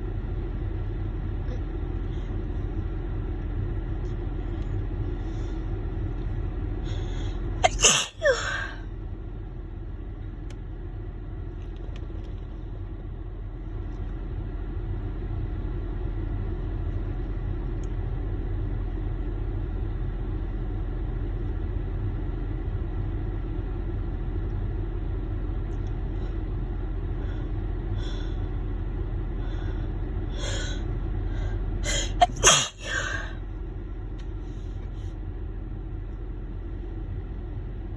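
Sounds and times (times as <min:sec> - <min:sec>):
woman sneezing: 0:07.6 - 0:08.8, 0:31.9 - 0:33.3
short catching breaths: 0:29.4 - 0:33.4.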